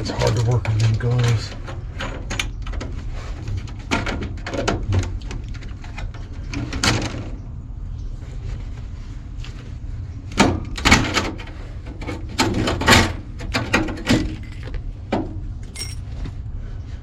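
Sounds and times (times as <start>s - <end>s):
steady low rumble: 4.8s - 17.0s
metal parts knocking and clanking: 10.4s - 16.2s.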